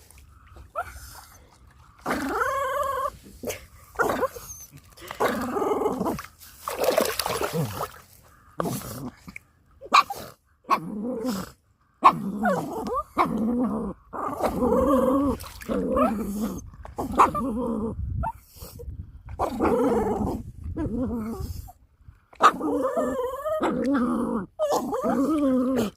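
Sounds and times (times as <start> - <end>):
dog growling playfully: 5.0 - 6.3, 10.7 - 18.1, 19.3 - 21.6, 22.4 - 25.9.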